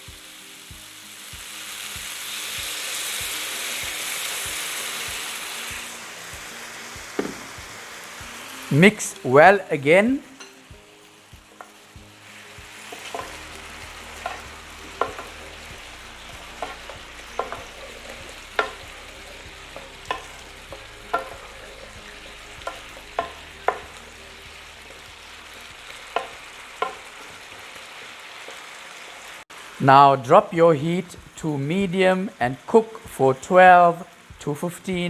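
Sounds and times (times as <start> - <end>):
frying hiss: 0.0 - 35.0
spoon knocking against pot: 17.4 - 17.7, 18.6 - 18.9, 20.1 - 21.4.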